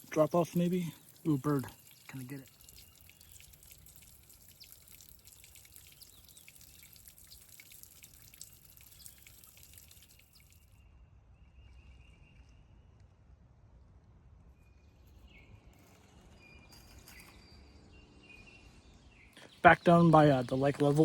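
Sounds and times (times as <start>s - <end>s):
faint water drips: 0.0s - 10.8s, 19.4s - 21.0s.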